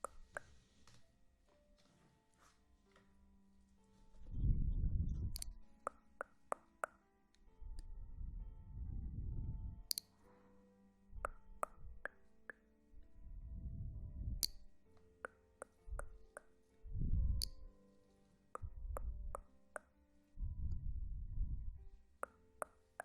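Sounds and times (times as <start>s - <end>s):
plopping taps and clicks: 0.0s - 0.5s, 5.3s - 7.0s, 11.2s - 12.6s, 15.3s - 16.5s, 18.6s - 19.9s
faint airy music: 0.0s - 23.0s.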